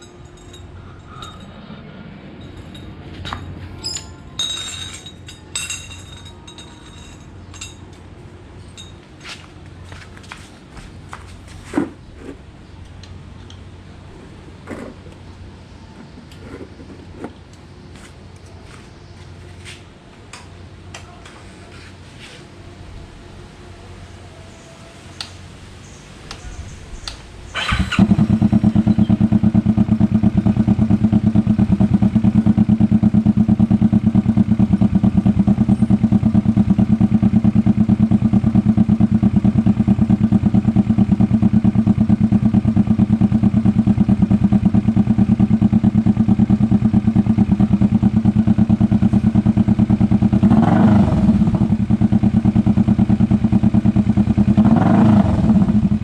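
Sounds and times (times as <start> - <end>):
motorcycle engine idling and revving: 10.9 - 18.5, 25.2 - 56.0.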